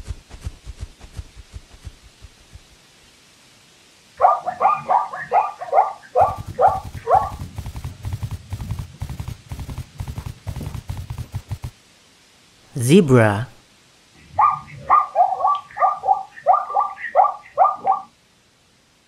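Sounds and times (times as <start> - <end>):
animal barking calls: 4.2 - 7.4, 14.4 - 18.1.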